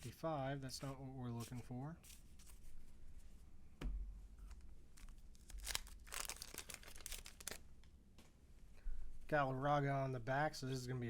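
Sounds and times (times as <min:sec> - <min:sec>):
wax paper crinkling and tearing: 0:05.0 - 0:07.6.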